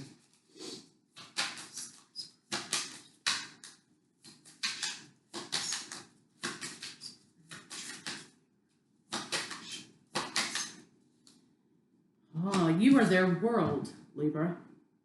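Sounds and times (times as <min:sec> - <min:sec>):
cards being shuffled: 0:00.0 - 0:08.4, 0:09.1 - 0:11.4.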